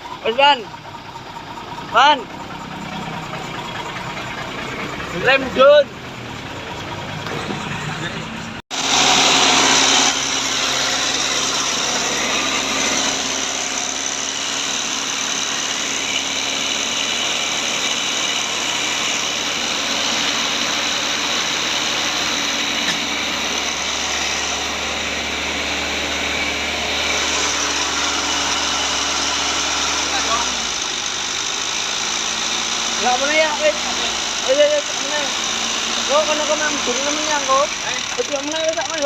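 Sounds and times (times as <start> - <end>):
truck engine idling: 0.0 - 39.0.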